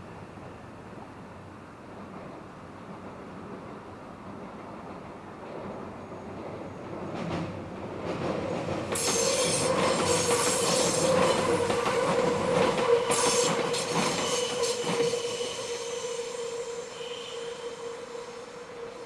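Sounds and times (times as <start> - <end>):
train wheels squealing: 5.8 - 7.7, 8.4 - 19.0.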